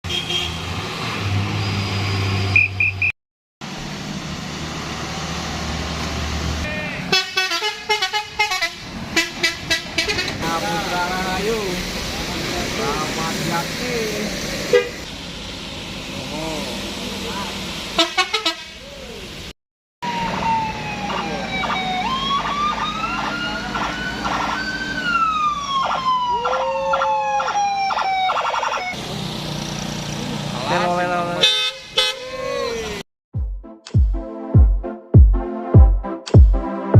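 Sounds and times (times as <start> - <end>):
multi-tone bus horn melody: 0.1 - 0.7, 6.6 - 10.8, 14.7 - 15.1, 17.9 - 18.8, 31.3 - 32.4
heavy vehicle engines rumbling: 0.1 - 33.0
vehicle siren wailing: 20.0 - 29.0, 32.0 - 33.0.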